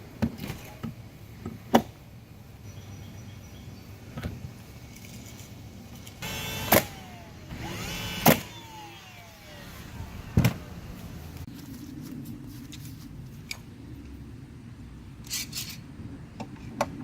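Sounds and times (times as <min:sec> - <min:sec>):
power tool motor whirring: 0:06.2 - 0:11.5.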